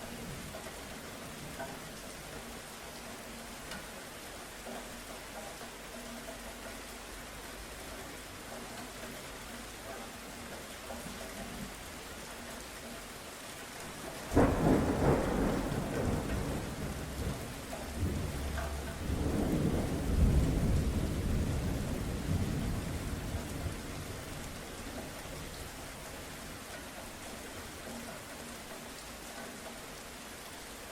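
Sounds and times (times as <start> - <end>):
steady rain: 0.0 - 30.9
thunder rumbling: 14.2 - 24.5.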